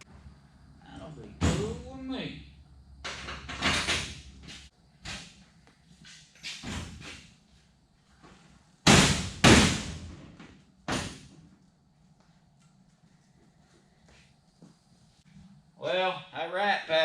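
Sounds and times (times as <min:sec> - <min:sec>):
knocks and clatters: 0:03.0 - 0:05.3
loud sharp bangs: 0:08.8 - 0:10.1.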